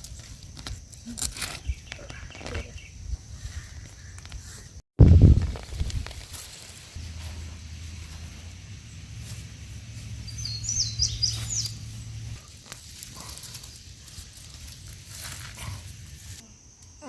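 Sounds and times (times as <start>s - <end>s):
bird chirping: 1.4s - 4.8s, 7.0s - 16.5s
steady low hum: 5.0s - 16.6s.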